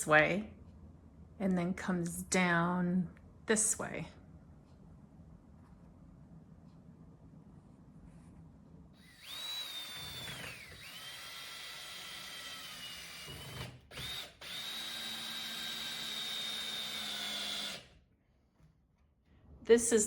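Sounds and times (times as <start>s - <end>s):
power drill motor whining: 9.0s - 17.9s.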